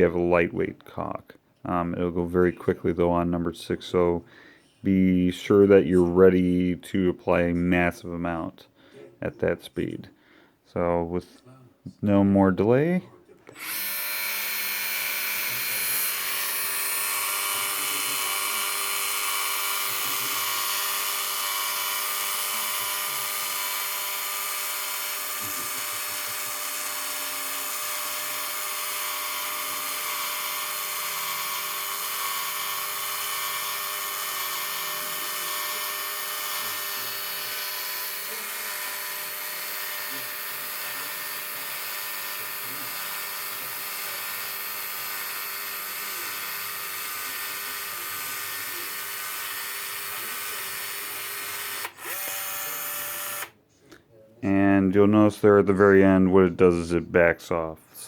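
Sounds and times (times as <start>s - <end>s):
caulk gun motor whine: 13.5s - 53.6s.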